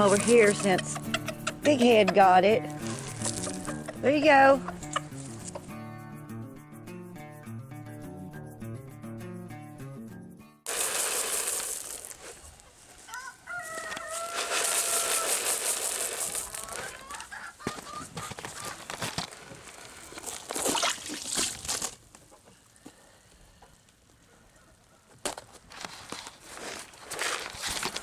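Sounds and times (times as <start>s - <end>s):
rustling and scuffling: 0.0s - 5.8s, 10.8s - 23.0s, 23.6s - 28.0s
rooster crowing: 13.0s - 18.3s.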